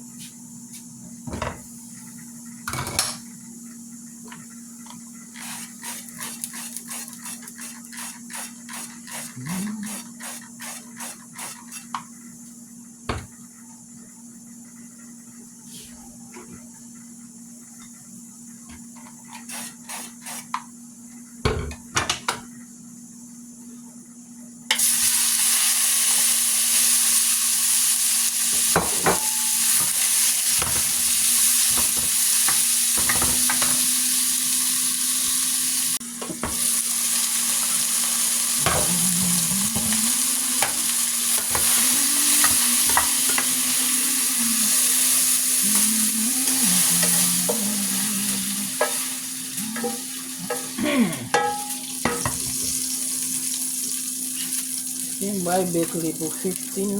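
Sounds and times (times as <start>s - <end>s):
food sizzling in a pan: 5.4s - 11.9s, 24.7s - 56.9s.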